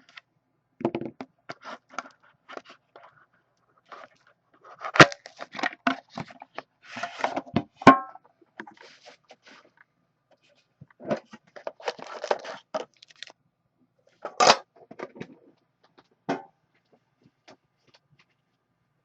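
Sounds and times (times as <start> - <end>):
packaging tearing and crinkling: 11.8 - 13.3.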